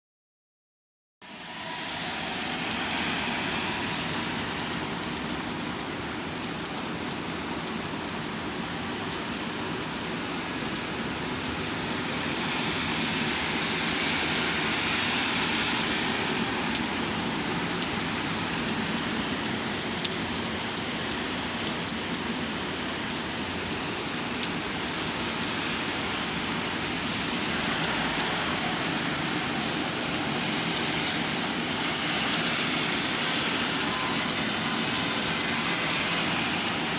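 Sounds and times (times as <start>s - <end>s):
steady rain: 1.2s - 36.9s.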